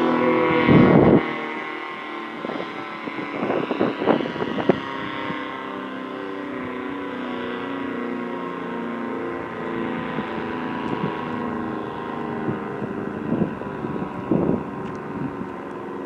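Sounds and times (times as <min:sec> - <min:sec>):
wind noise on microphone: 0:00.0 - 0:01.4, 0:02.0 - 0:05.7, 0:09.7 - 0:16.0
tornado siren steady tone: 0:00.0 - 0:16.0.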